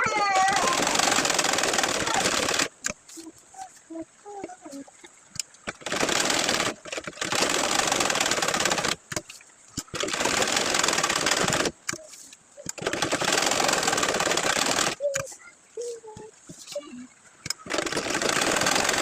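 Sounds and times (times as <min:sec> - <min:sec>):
sewing machine stitching: 0:00.0 - 0:03.0, 0:05.7 - 0:09.0, 0:09.8 - 0:11.8, 0:12.6 - 0:15.0, 0:17.5 - 0:19.0.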